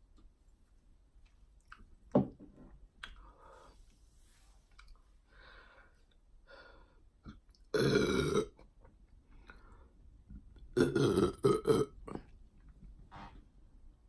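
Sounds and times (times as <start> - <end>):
woman burping loudly: 7.7 - 8.6, 10.8 - 12.3.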